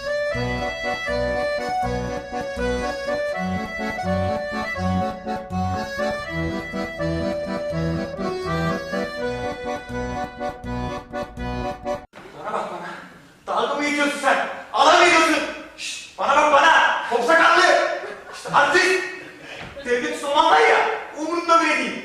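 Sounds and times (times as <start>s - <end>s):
accordion music: 0.0s - 12.1s.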